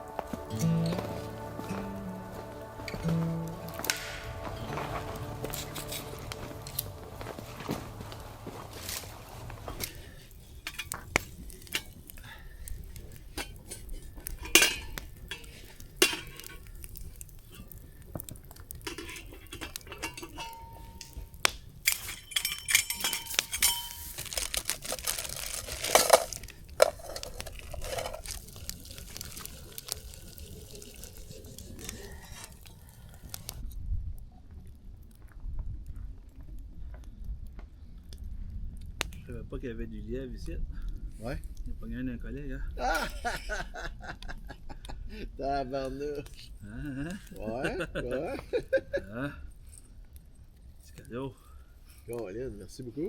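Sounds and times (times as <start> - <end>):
metal utensils and dishes clinking: 3.8 - 7.0, 9.7 - 12.3, 13.2 - 16.9, 18.8 - 32.7.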